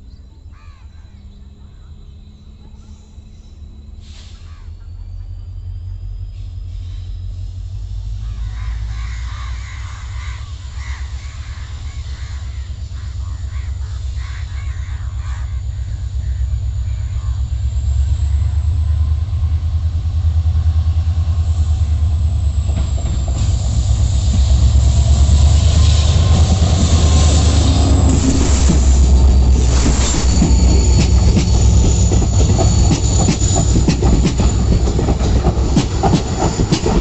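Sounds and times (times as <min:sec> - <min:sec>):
diesel locomotive engine throb: 0:00.0 - 0:37.0
train wheel and rail noise: 0:00.0 - 0:37.0.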